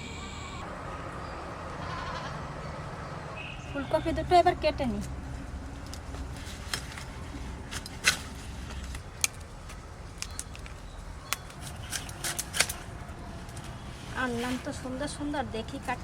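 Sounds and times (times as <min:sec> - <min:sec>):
cauliflower snapping and cracking: 0:11.3 - 0:12.9.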